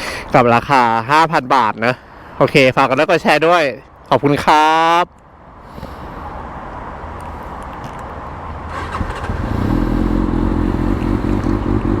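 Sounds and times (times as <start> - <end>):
motorcycle engine running: 8.8 - 12.0.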